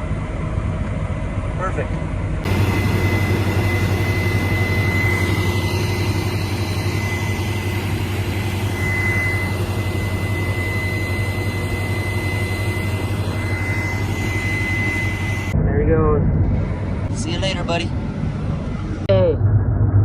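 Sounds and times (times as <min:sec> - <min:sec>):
combine harvester running: 0:00.0 - 0:15.6
auger high whine: 0:00.0 - 0:20.0.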